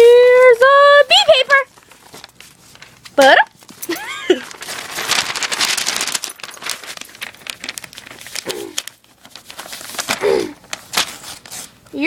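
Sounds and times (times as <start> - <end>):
dog tearing paper: 4.3 - 11.8.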